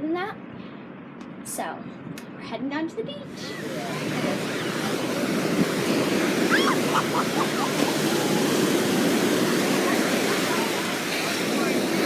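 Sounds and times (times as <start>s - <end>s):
faint high calls: 3.3s - 11.8s
ocean surf on a beach: 3.3s - 12.0s.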